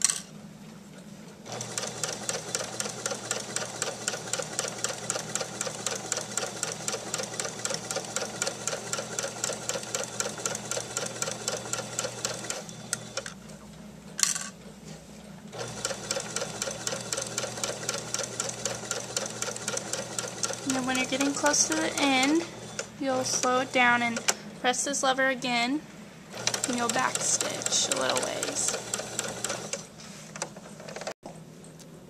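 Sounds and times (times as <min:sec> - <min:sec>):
sewing machine stitching: 0:01.5 - 0:13.4, 0:15.5 - 0:24.4, 0:26.3 - 0:29.9.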